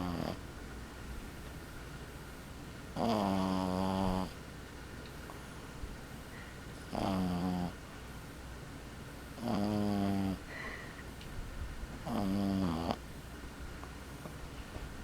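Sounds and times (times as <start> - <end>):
puppy snoring: 0.0 - 0.4, 3.0 - 4.4, 6.9 - 7.8, 9.4 - 10.6, 12.0 - 13.0.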